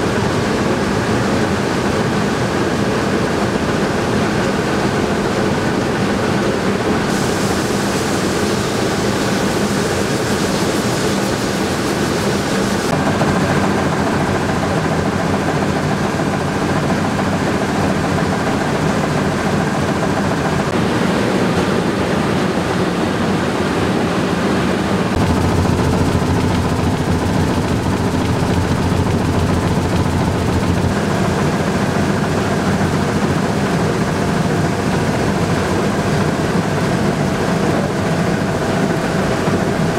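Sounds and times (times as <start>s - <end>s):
mill machinery humming: 7.0s - 39.9s.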